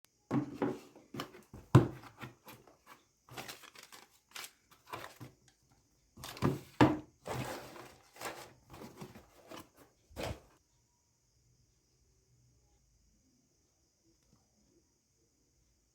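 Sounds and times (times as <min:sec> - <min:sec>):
packaging rustling and crinkling: 0:02.0 - 0:05.5, 0:06.2 - 0:10.6.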